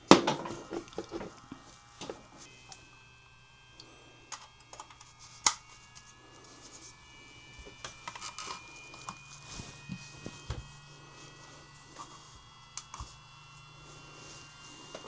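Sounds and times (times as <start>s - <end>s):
faint steady hum: 0.0s - 15.0s
small parts clicking and tapping: 4.3s - 6.2s.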